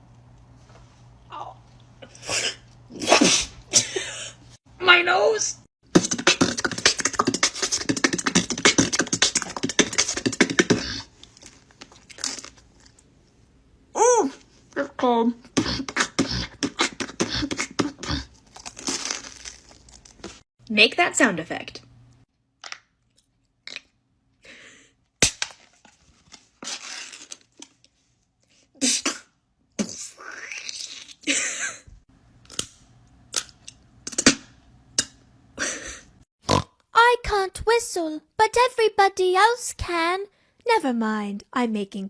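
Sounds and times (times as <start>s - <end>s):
mouth clicks and pops: 5.9s - 11.1s
person beatboxing: 5.9s - 11.1s, 15.6s - 18.2s.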